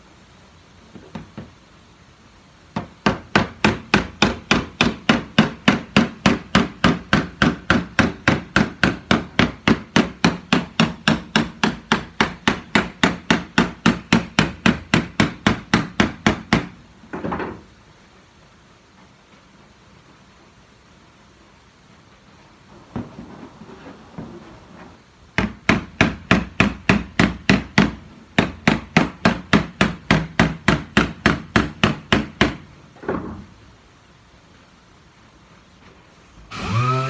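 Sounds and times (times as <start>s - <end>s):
hammering on sheet metal: 2.8s - 16.8s.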